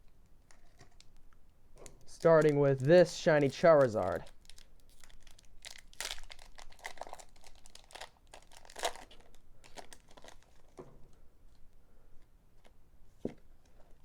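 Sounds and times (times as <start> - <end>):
foil wrapper crinkling and tearing: 1.8 - 10.8.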